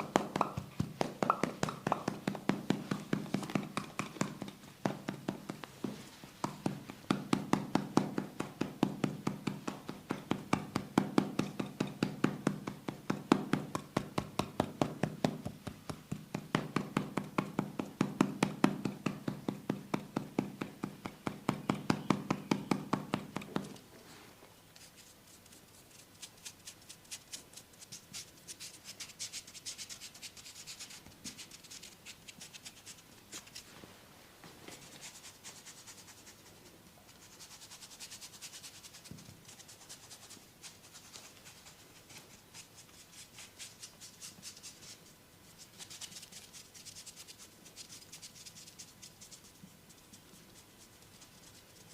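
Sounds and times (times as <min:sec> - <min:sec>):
hands slapping skin: 0:00.0 - 0:05.7.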